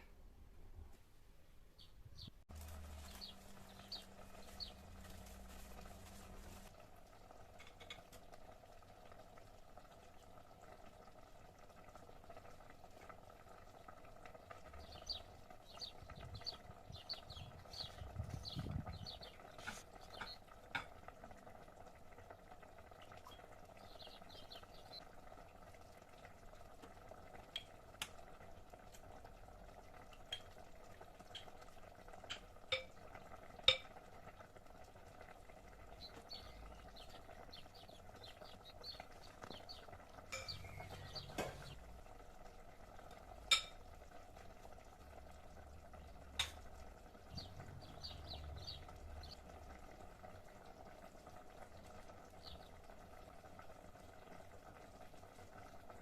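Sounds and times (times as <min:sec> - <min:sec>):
high bird chirps: 0:36.0 - 0:41.8.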